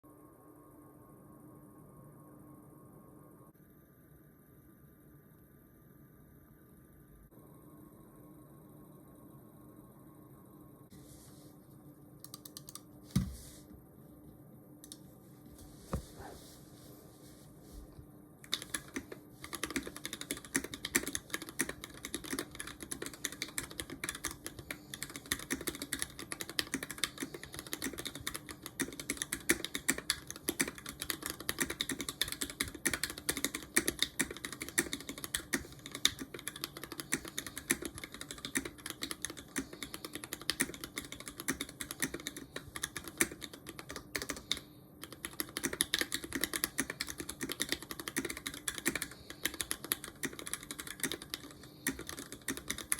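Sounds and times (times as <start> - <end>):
mechanical keyboard typing: 12.2 - 12.9, 18.5 - 52.9.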